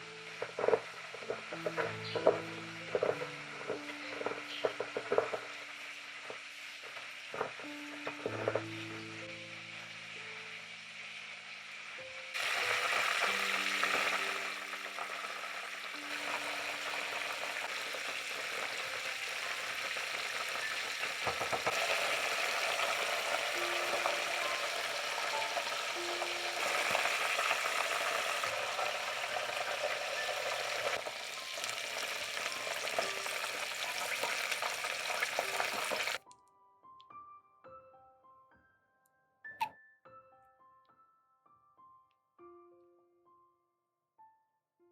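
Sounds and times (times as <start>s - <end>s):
soft piano notes: 0.0s - 34.5s
food sizzling in a pan: 0.0s - 36.2s.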